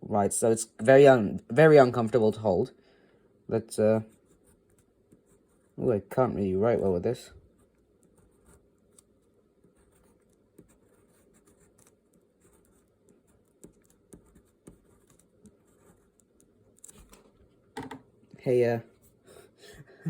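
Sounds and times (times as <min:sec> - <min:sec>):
pen scratching on paper: 0:04.1 - 0:05.8, 0:07.5 - 0:17.1.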